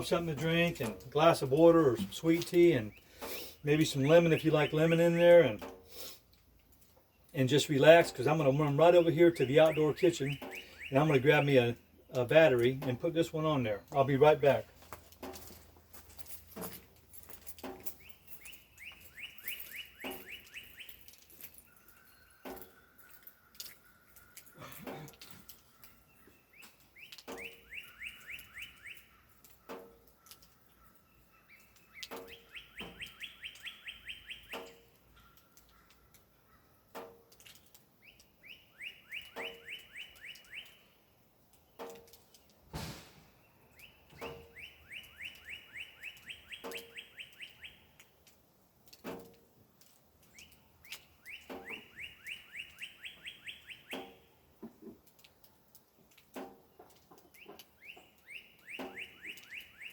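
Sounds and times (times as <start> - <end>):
songbird trilling: 7.1 - 14.6, 17.9 - 36.6, 38.0 - 41.0, 43.4 - 48.1, 50.3 - 54.3, 57.3 - 59.9.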